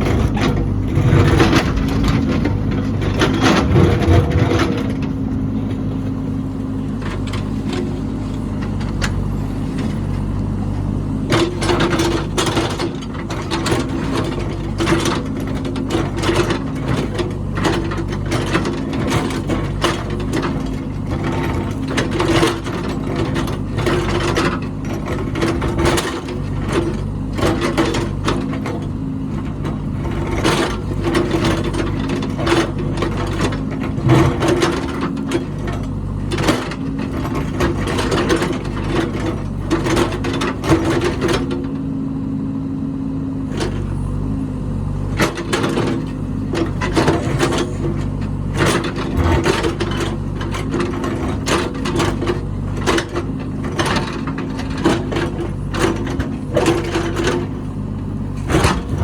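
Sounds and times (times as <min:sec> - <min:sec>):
heavy machine engine running: 0:00.0 - 0:59.0
metallic clanks and knocks: 0:45.1 - 0:57.7, 0:58.3 - 0:59.0.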